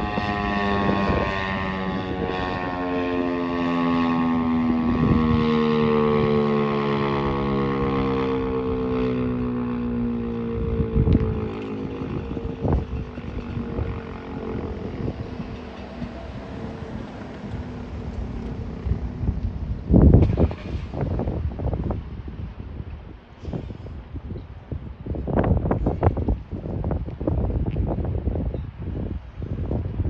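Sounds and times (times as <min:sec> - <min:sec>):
warning siren winding down: 0:00.0 - 0:21.4.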